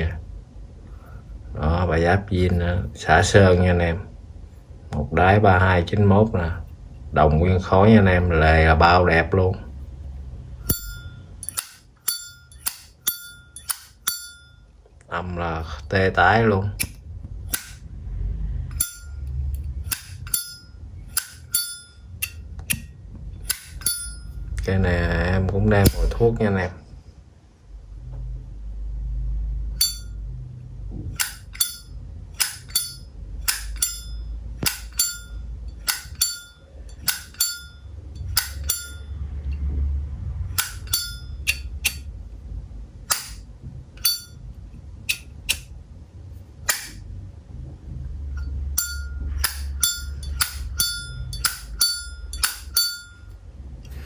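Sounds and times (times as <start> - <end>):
lighter lid clicking open and shut: 31.2 - 31.8.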